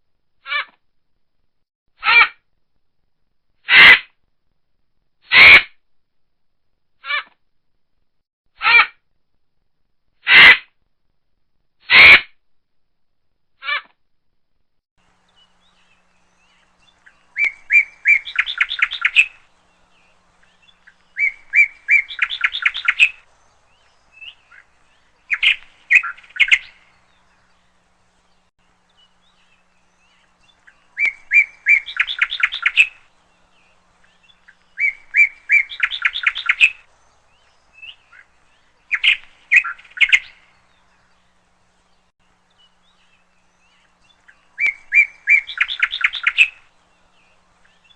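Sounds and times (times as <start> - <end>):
songbird singing with trill: 15.1 - 47.9.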